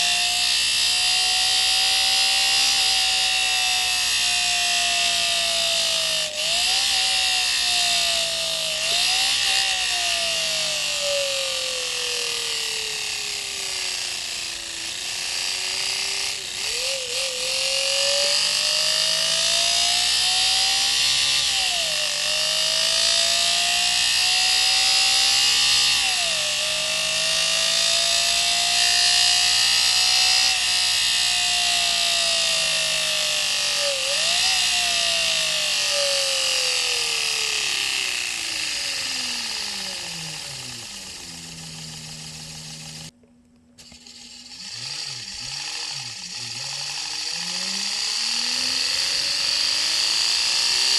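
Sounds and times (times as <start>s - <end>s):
paper strip buzzing on spinning disc: 0.0s - 43.2s, 43.8s - 50.9s.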